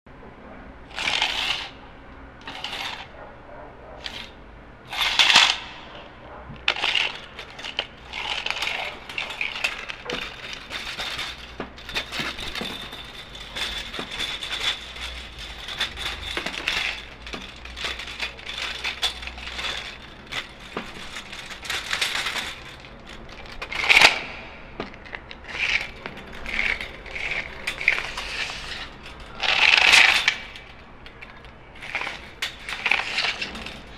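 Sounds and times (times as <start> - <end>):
tape measure clicking and rattling: 0.9 - 3.2, 3.9 - 33.9.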